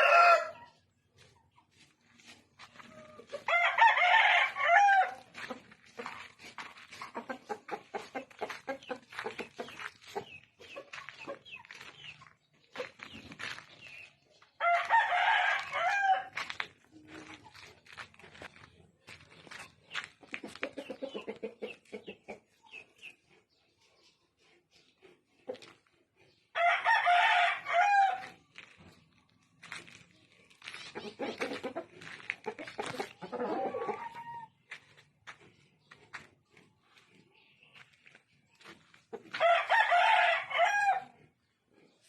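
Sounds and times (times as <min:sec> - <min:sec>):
rooster crowing: 0:00.0 - 0:00.6, 0:03.4 - 0:05.3, 0:14.6 - 0:16.4, 0:26.6 - 0:28.3, 0:39.4 - 0:41.1
rooster clucking calls: 0:30.9 - 0:34.6.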